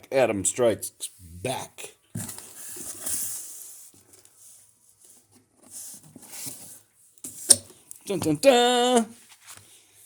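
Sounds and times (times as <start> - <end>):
paper rustling and sliding: 2.2 - 6.8, 9.2 - 9.8.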